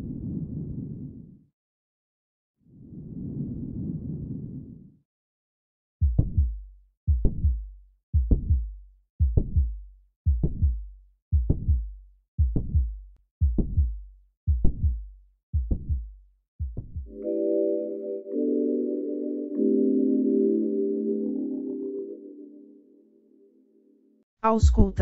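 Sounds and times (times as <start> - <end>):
heartbeat through stethoscope: 6.0 - 17.2, 24.6 - 25.0.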